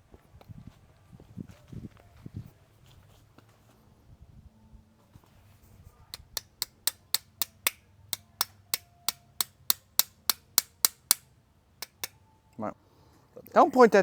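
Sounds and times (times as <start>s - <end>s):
hammer tapping on metal: 6.2s - 11.2s, 11.8s - 12.2s.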